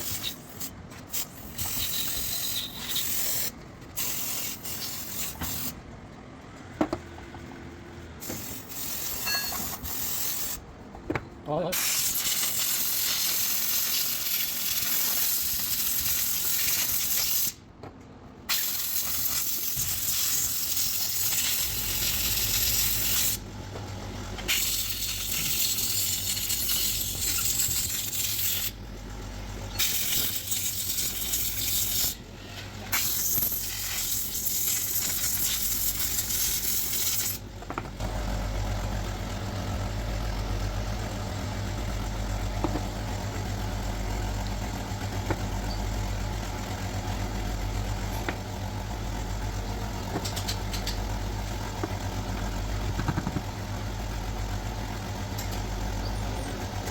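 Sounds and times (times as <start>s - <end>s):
low engine hum: 37.5s - 56.9s.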